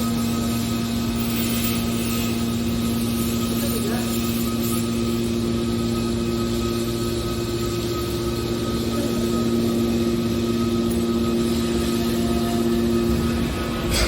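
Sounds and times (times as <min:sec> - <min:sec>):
faint high whine: 0:00.0 - 0:14.0
baler machine hum: 0:04.9 - 0:14.0.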